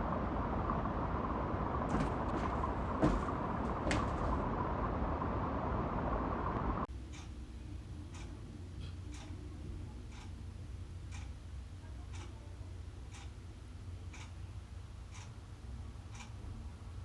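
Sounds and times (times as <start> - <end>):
faint hum: 0.0 - 17.0
sharp knocks: 1.9 - 4.4
faint ticking: 6.9 - 17.0.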